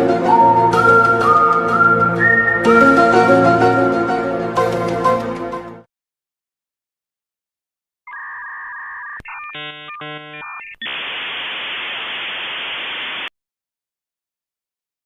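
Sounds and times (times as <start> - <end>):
short electronic tone: 8.1 - 11.1
buzzing tone: 8.1 - 13.3
static hiss: 9.2 - 13.3.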